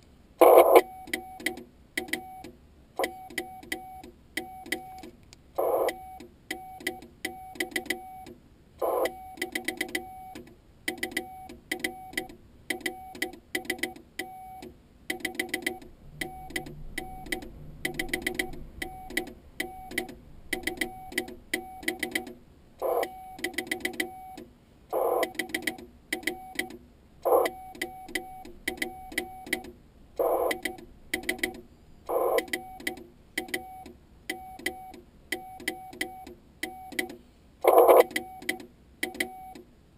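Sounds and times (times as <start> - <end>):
morse code tone: 0.4 - 2.4, 5.6 - 29.6, 30.2 - 39.6.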